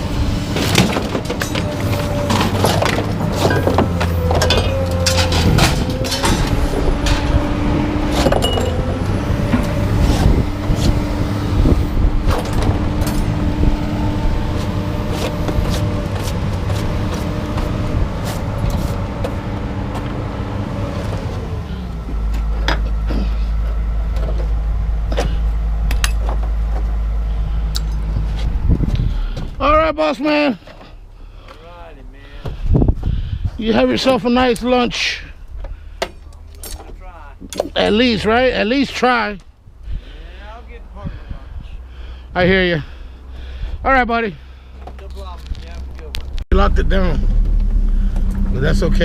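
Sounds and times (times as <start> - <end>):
vehicle engine running: 0.0 - 39.0, 39.6 - 49.0
clanks and knocks: 0.5 - 7.4, 8.1 - 10.3.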